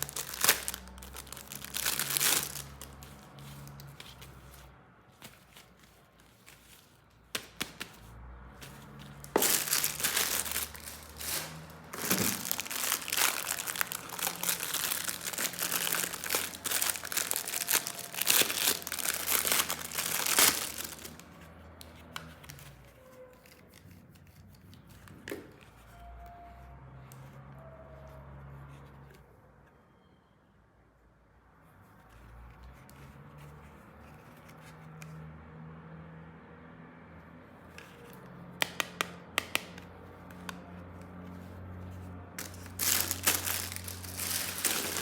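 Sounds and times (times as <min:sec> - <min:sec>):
packaging crinkling and tearing: 0:00.0 - 0:04.5, 0:08.7 - 0:21.4, 0:42.4 - 0:45.0.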